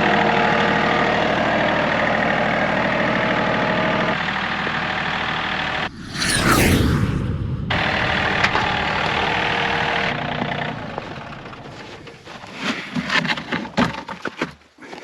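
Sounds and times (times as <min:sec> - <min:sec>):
vehicle engine running: 0:07.7 - 0:12.9.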